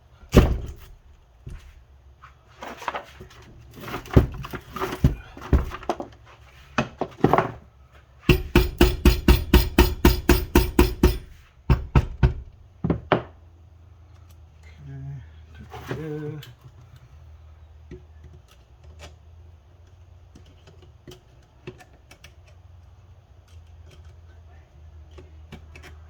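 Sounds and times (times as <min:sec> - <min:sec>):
knocks on metal case: 0:08.3 - 0:13.3.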